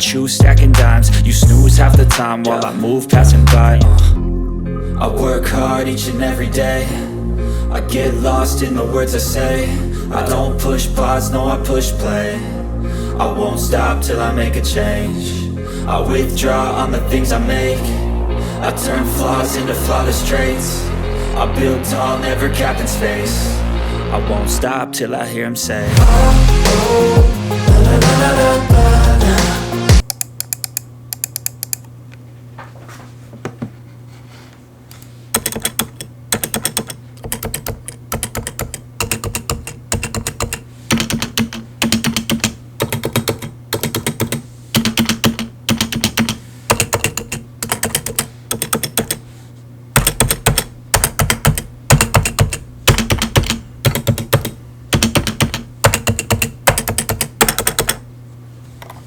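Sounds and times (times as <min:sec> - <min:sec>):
keyboard keystrokes: 0:35.4 - 0:49.2, 0:50.0 - 0:58.0.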